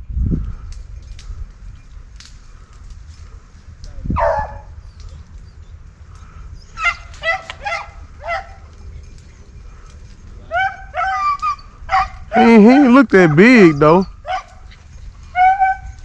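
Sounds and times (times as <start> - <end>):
hounds baying: 4.2 - 4.8, 6.6 - 16.0.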